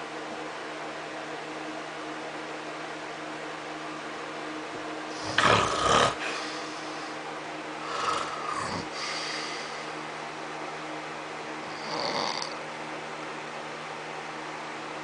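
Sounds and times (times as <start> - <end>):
steady low hum: 0.0 - 15.0
man snoring: 5.2 - 6.6, 7.8 - 9.6, 11.7 - 12.6.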